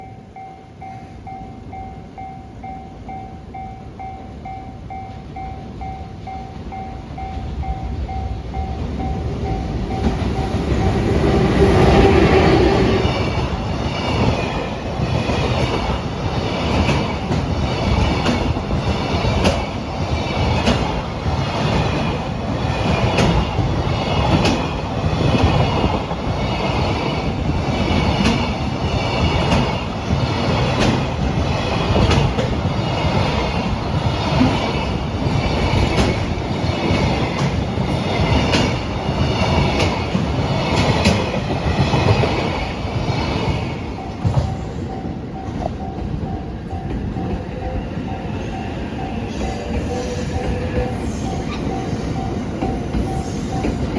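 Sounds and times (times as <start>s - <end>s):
train wheels clicking on rail joints: 4.4s - 53.9s.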